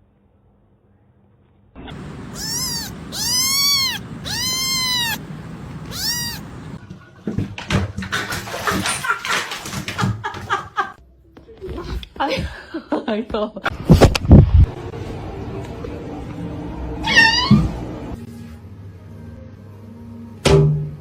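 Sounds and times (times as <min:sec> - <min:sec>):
cat meowing: 0:02.0 - 0:06.8.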